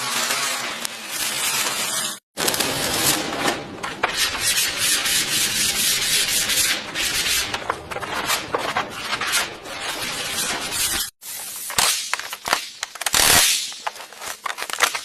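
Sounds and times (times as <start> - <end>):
sanding car bodywork: 4.0 - 11.6.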